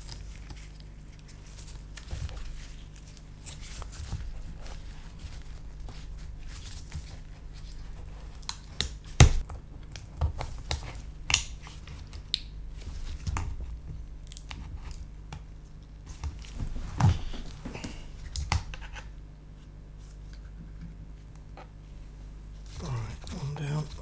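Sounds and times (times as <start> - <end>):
low steady hum: 0.0 - 24.0.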